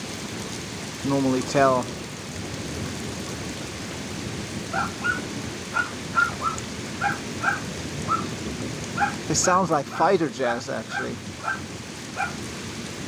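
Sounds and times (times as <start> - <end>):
heavy rain pouring: 0.0 - 13.0
low rumble of thunder: 1.8 - 13.0
animal short high calls: 4.7 - 8.3, 9.0 - 9.3.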